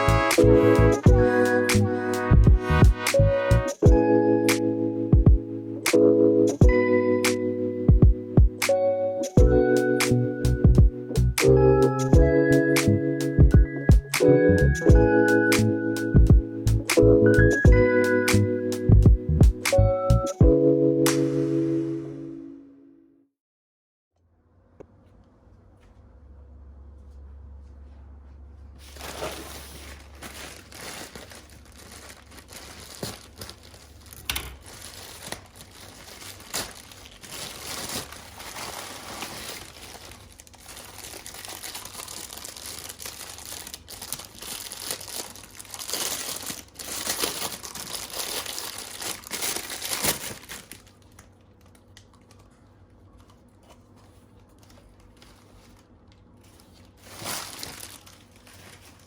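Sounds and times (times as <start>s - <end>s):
packaging tearing: 28.8s - 52.4s, 54.6s - 59.0s
packaging crinkling and rustling: 28.8s - 59.0s.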